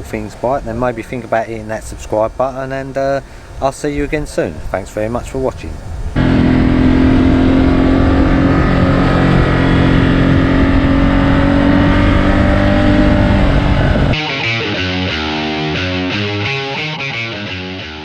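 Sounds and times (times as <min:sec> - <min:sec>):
motorcycle engine running under load: 0:06.2 - 0:14.2.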